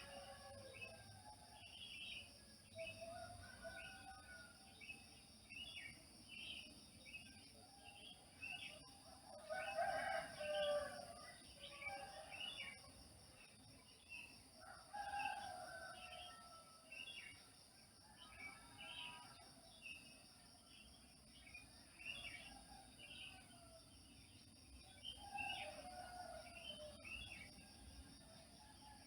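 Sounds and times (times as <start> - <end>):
rooster crowing: 9.5 - 11.1.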